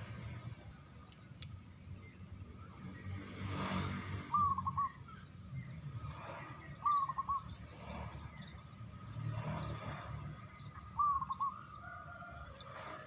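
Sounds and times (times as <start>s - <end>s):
dove cooing: 11.0s - 12.2s.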